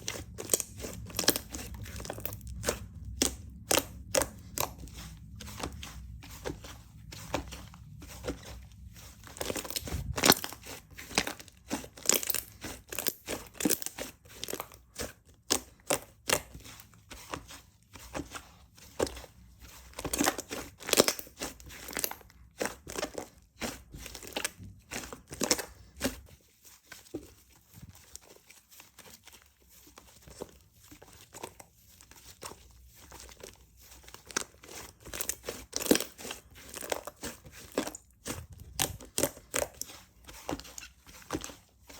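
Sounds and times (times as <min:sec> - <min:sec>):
slime squished by hand: 0:00.0 - 0:14.8, 0:34.1 - 0:41.6.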